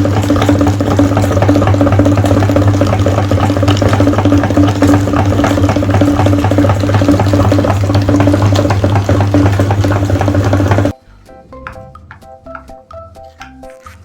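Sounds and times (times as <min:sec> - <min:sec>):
meat grinder motor hum: 0:00.0 - 0:10.9
wet crackling: 0:00.0 - 0:11.0, 0:11.6 - 0:14.0.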